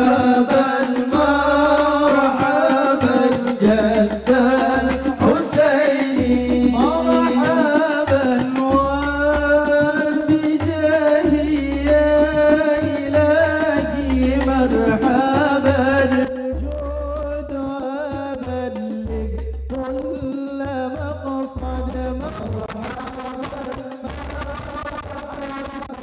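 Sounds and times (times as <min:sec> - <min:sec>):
solo voice singing: 0:00.0 - 0:26.0
low pulsing bass: 0:11.2 - 0:15.1, 0:15.7 - 0:23.0.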